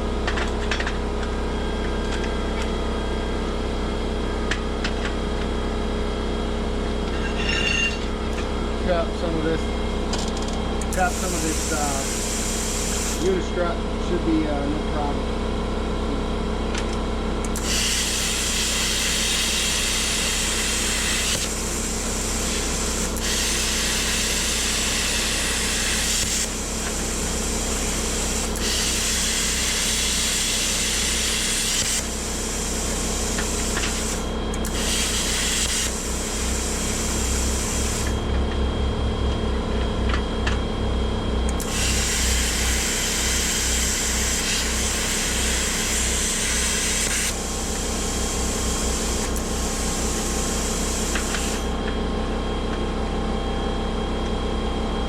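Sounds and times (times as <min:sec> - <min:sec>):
steady hum: 0:00.0 - 0:55.0
plasma cutter hissing: 0:10.8 - 0:13.6, 0:17.5 - 0:38.2, 0:41.5 - 0:51.8.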